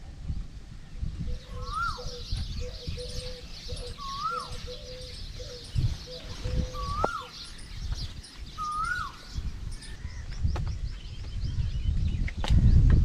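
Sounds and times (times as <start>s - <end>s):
high twittering of small birds: 0.2s - 13.0s
whistled bird call rising and falling: 1.4s - 10.2s.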